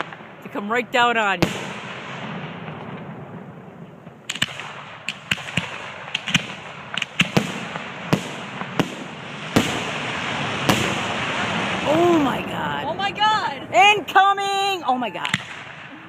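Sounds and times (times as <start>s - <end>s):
fireworks bangs: 0.0s - 16.0s
fireworks hissing: 7.2s - 16.0s.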